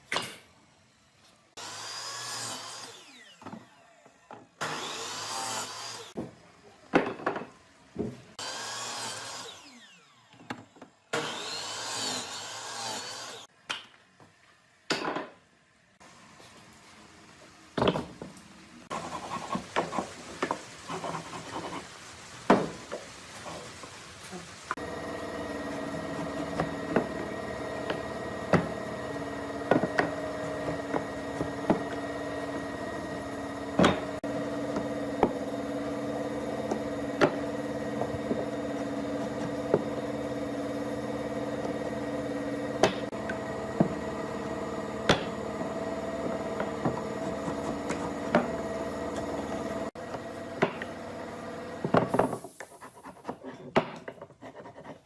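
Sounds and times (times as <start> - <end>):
machine hum: 24.7 - 52.0.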